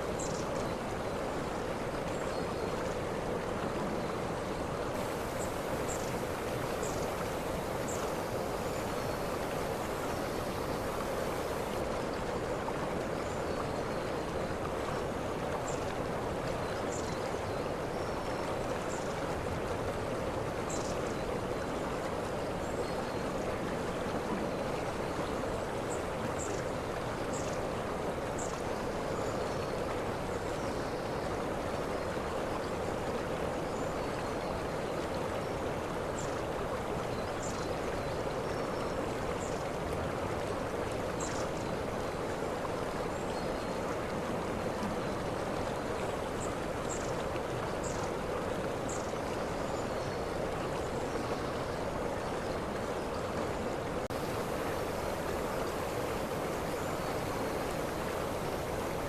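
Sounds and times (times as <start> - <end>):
waterfall rushing: 5.0 - 11.8, 54.1 - 59.0.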